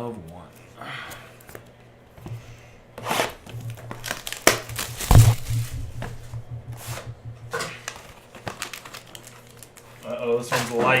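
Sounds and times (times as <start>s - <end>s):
heavy thump: 3.5s - 7.9s
packaging crinkling and tearing: 8.4s - 10.0s.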